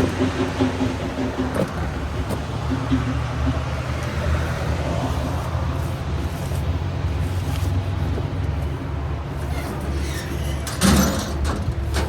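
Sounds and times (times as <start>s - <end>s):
large engine idling: 0.0s - 7.5s.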